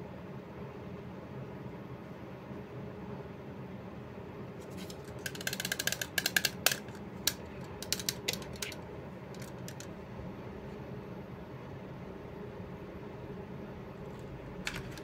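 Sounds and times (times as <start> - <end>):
plastic mouse shell creaking and clicking: 4.6 - 9.9, 14.1 - 15.0.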